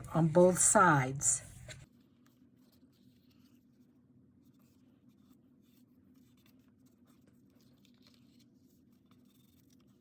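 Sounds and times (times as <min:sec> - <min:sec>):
low room hum: 0:00.0 - 0:09.5.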